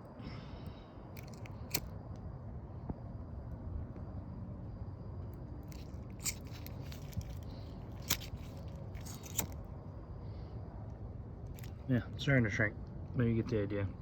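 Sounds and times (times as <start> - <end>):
sharp handling clicks: 1.2 - 1.9, 5.7 - 9.6.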